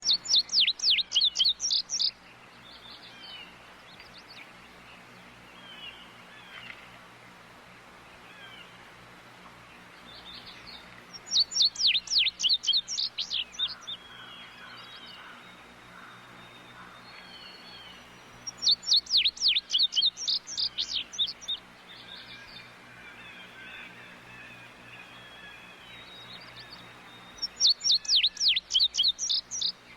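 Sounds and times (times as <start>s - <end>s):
songbird whistling rapid notes: 0.0s - 2.1s, 11.2s - 13.7s, 18.5s - 21.6s, 27.3s - 29.8s
faint bird chirps: 0.0s - 6.8s, 10.1s - 29.9s.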